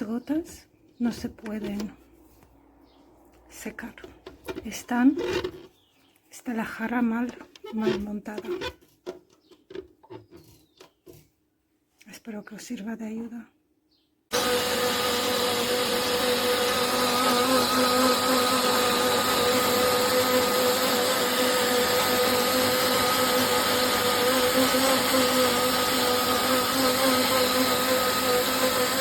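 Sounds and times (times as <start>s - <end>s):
blender motor whining: 4.2s - 5.8s, 14.3s - 29.0s.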